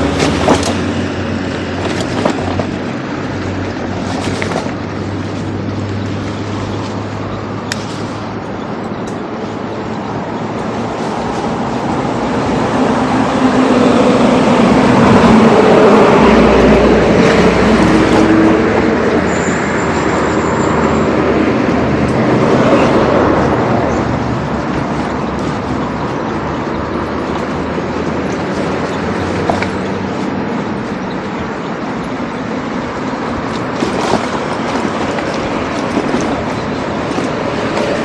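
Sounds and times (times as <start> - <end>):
street traffic noise: 0.0 - 38.0.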